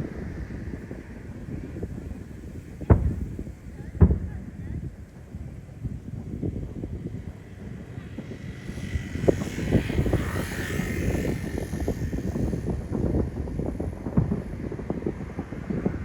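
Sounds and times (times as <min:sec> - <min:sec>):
distant fireworks booming: 0:00.0 - 0:08.0, 0:12.2 - 0:16.0
wind buffeting microphone: 0:00.0 - 0:16.0.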